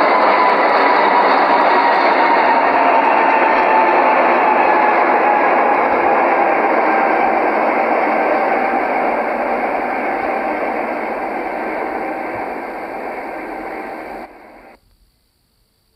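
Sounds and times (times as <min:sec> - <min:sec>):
rushing static noise: 0:05.2 - 0:14.8.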